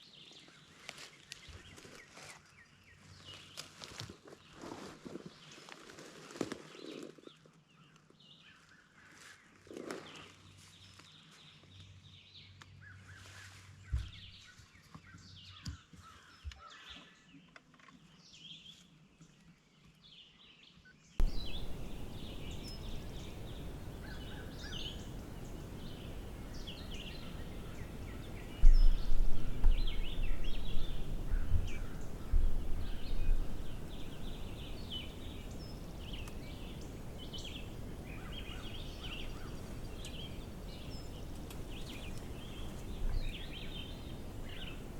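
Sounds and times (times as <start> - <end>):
songbirds chirping and singing: 6.8 - 44.9
low rumbling thumps: 21.2 - 37.6
steady hiss: 21.2 - 44.9.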